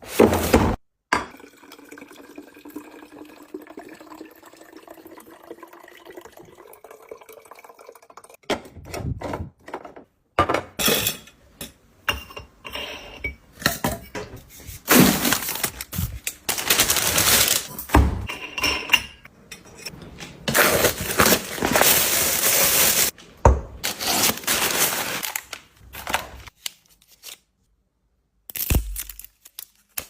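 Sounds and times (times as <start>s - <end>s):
glass and containers clinking: 15.2s - 20.1s.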